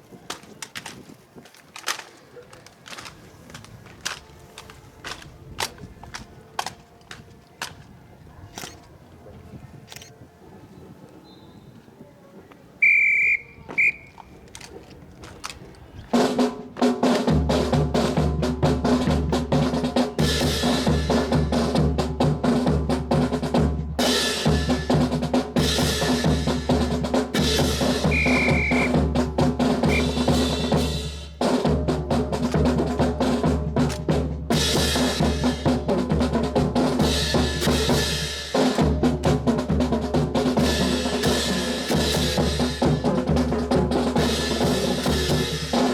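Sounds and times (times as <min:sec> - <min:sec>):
short high whistle blasts: 0:12.8 - 0:14.2, 0:28.1 - 0:29.0, 0:29.9 - 0:30.2
marching snare and bass drums: 0:16.1 - 0:45.9.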